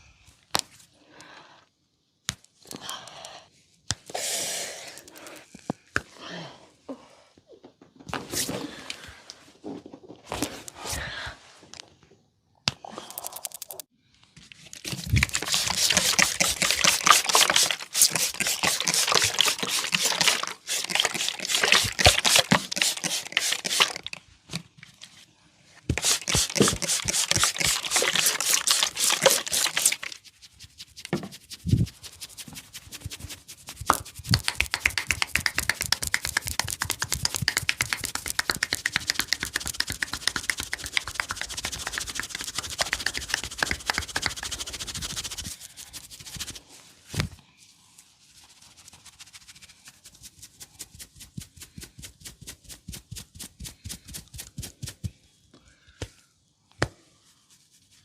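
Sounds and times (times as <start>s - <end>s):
hands scratching through hair: 14.8s - 24.2s, 25.9s - 46.8s, 48.2s - 55.1s, 57.2s - 58.0s.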